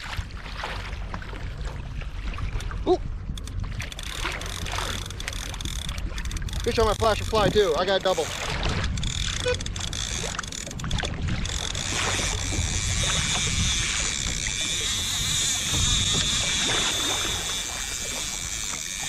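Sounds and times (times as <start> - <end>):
water moving against kayak: 0.0 - 19.0
wind on microphone: 0.0 - 19.0.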